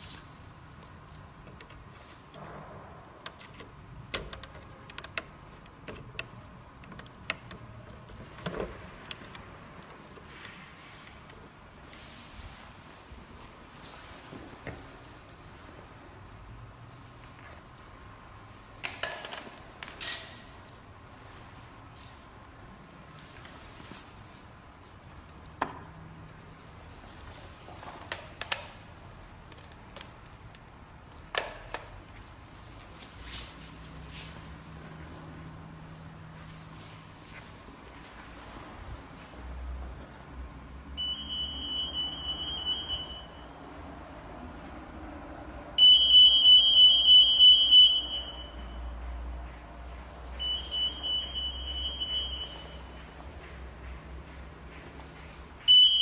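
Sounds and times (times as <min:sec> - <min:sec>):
security gate alarm beeping: 0:41.0 - 0:43.6, 0:45.8 - 0:49.0, 0:50.3 - 0:53.2, 0:55.6 - 0:56.0.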